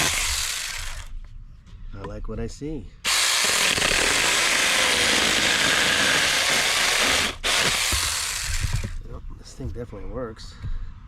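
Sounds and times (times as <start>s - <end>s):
mini chainsaw cutting branch: 0.0s - 1.1s, 3.1s - 9.0s.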